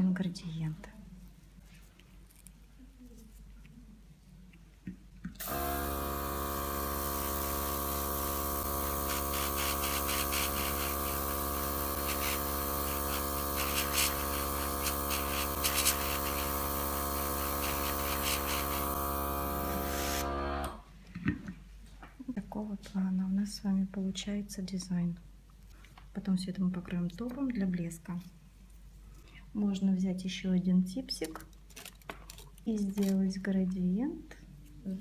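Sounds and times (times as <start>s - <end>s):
airbrush spraying hiss: 5.4s - 20.2s
airbrush compressor humming: 5.4s - 20.8s.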